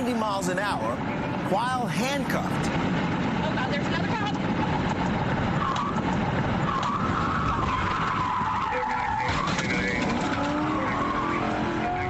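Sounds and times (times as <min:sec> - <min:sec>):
road and engine noise: 0:00.0 - 0:12.0
car tyres squealing: 0:04.6 - 0:12.0.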